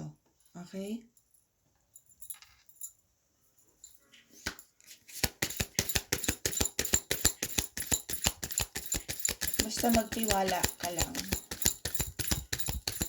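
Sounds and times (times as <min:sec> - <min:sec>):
cards shuffling: 0:04.4 - 0:13.0.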